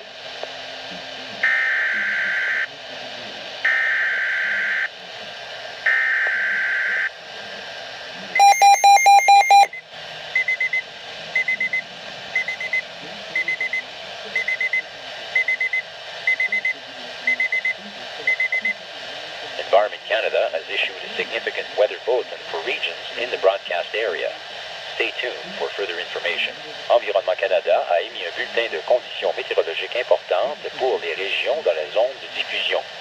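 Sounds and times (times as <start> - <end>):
loud pulsed alarm tone: 8.4 - 9.8
quick high beeps: 8.4 - 9.8.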